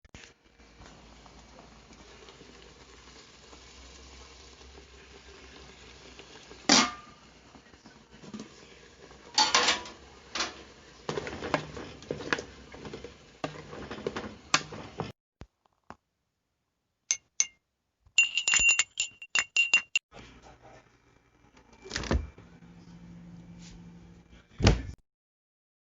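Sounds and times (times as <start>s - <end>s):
dishes and cutlery clattering: 9.3s - 14.9s, 18.2s - 20.0s.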